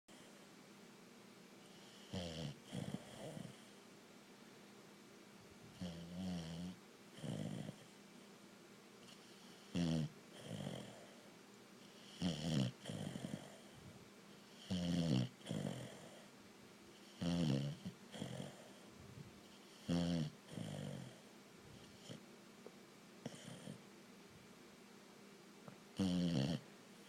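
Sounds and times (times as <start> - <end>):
pet snoring: 1.6 - 3.8, 5.7 - 8.0, 9.0 - 16.3, 17.0 - 22.2, 23.2 - 23.8, 25.9 - 26.7.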